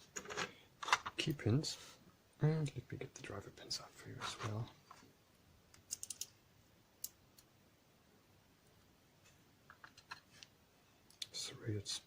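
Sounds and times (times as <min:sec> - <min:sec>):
small metal pins clicking: 0:05.7 - 0:06.4.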